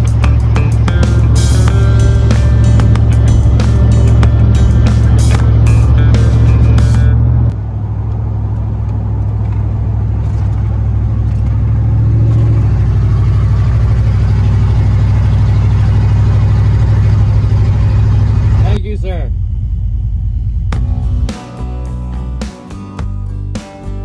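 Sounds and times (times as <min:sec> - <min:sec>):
music: 0:00.0 - 0:07.5, 0:20.7 - 0:24.0
van engine droning while driving: 0:00.0 - 0:23.4.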